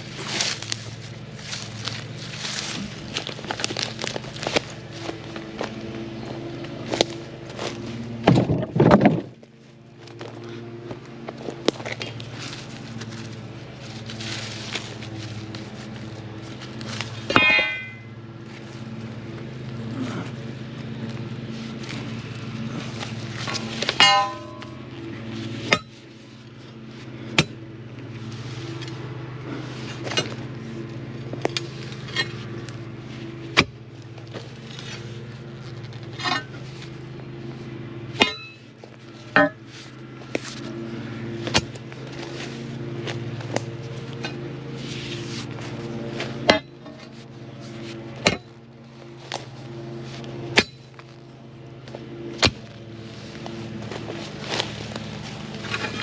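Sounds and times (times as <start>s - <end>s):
steady low hum: 0.0s - 56.0s
sharp clinks and knocks: 23.5s - 24.8s.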